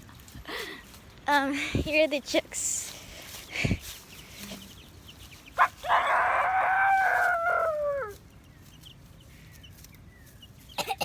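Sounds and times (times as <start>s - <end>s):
rooster crowing: 5.6s - 8.2s.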